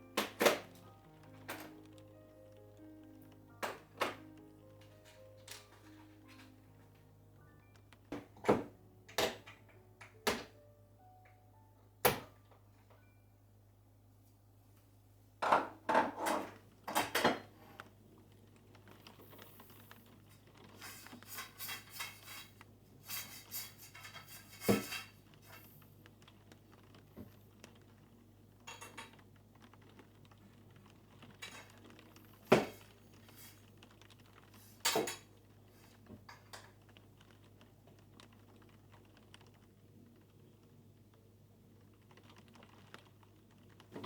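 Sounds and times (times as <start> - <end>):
light scraping and rattling: 3.5 - 7.0, 15.5 - 40.4
sharp knocks and clatters: 20.8 - 25.2.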